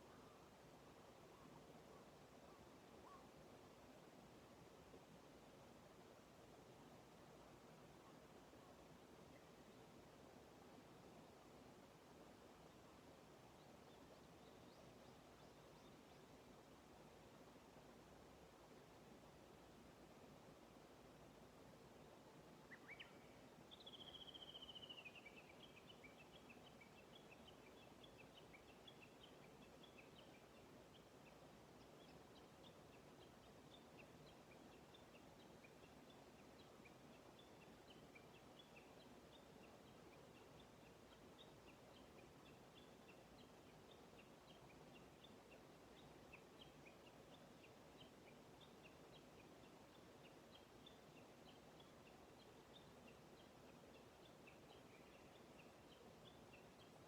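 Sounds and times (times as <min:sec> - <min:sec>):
low outdoor hiss: 0:00.0 - 0:57.0
small birds chirping: 0:22.1 - 0:57.0.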